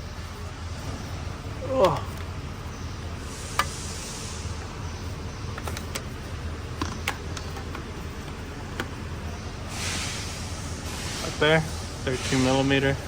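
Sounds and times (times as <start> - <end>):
steady low hum: 0.0 - 13.0
sharp clicks and knocks: 3.5 - 3.8, 5.5 - 9.0.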